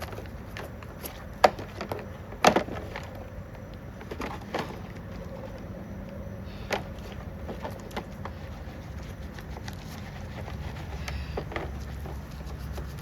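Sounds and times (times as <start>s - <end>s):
brush scrubbing metal part: 7.0s - 13.0s.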